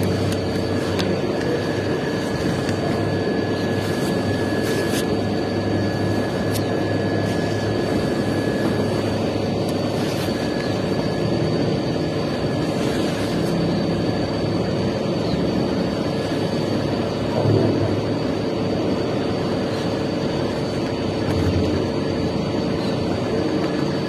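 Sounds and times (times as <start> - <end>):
mechanical engine drone: 0.0 - 24.0.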